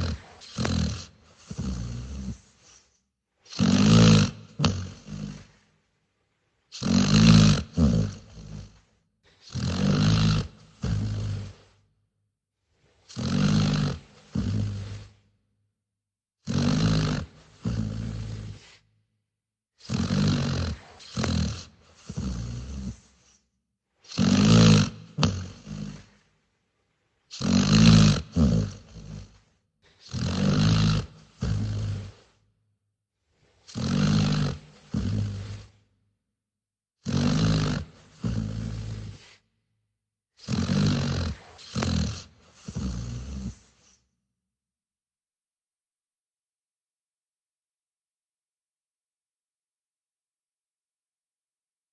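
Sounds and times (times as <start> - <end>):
dog snoring: 0.0 - 5.7, 6.7 - 11.8, 12.7 - 15.4, 16.4 - 18.9, 19.8 - 23.4, 24.0 - 26.3, 27.3 - 32.5, 33.3 - 36.0, 37.0 - 39.5, 40.4 - 44.1.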